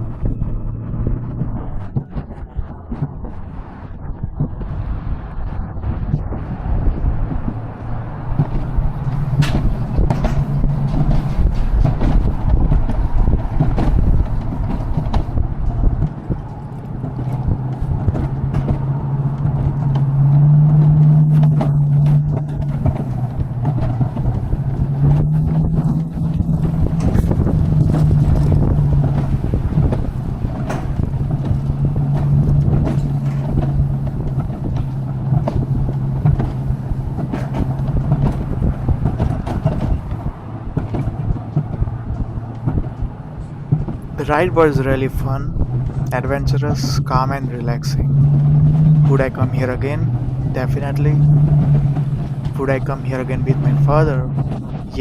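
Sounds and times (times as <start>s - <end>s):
cart rolling on metal track: 0.0s - 55.0s
coaster wheels rumbling on rail: 0.0s - 55.0s
low hum: 0.0s - 55.0s
clicks and knocks: 7.3s - 44.6s.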